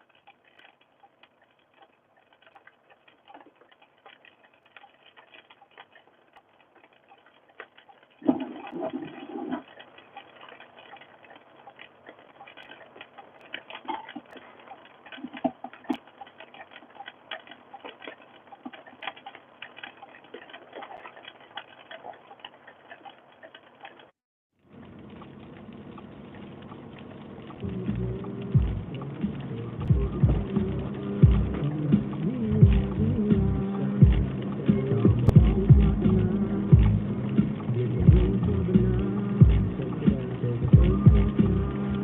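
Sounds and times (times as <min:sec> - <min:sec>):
light ticks and taps: 0:00.0 - 0:24.2
steady hiss: 0:24.7 - 0:42.0.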